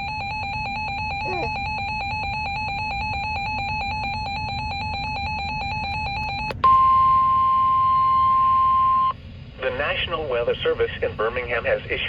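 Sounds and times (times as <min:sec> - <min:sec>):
rapidly pulsing electronic alarm tone: 0:00.0 - 0:09.2
steady single-pitch warning alert tone: 0:00.0 - 0:09.2
faint radio hiss: 0:09.2 - 0:12.0.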